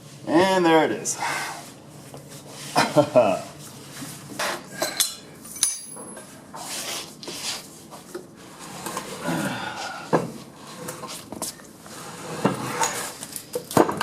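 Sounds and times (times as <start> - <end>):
ringing metal clank: 5.0 - 6.2
metal scraping and rubbing: 10.6 - 13.3.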